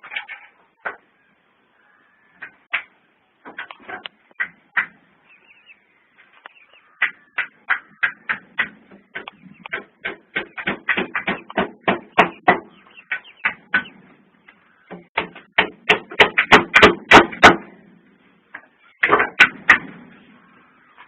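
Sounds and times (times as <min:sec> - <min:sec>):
rapid sharp knocks: 0:07.0 - 0:14.0, 0:14.9 - 0:17.8, 0:19.0 - 0:20.0.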